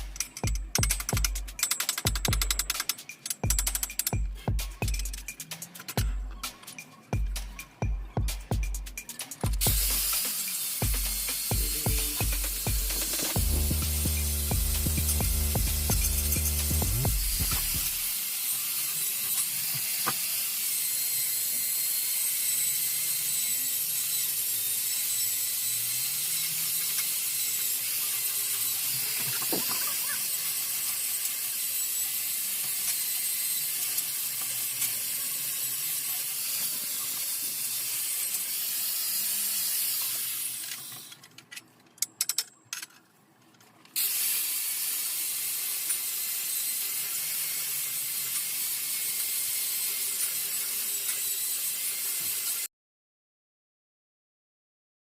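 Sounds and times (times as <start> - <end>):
welding arc crackling: 8.4 - 18.3.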